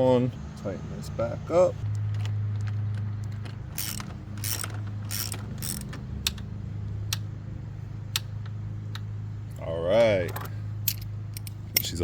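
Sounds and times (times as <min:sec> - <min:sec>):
steady low hum: 0:00.0 - 0:12.0
hand ratchet clicking: 0:03.7 - 0:06.4.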